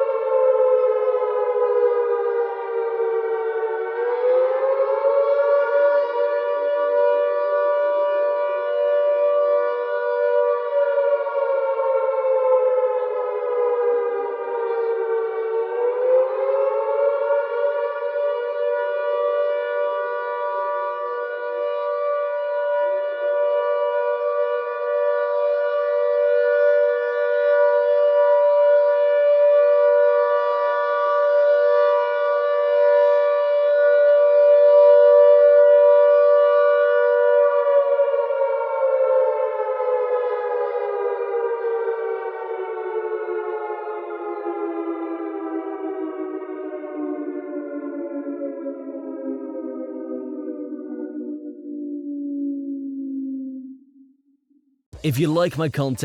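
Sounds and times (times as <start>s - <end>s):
air-raid siren wailing: 0.1s - 17.5s.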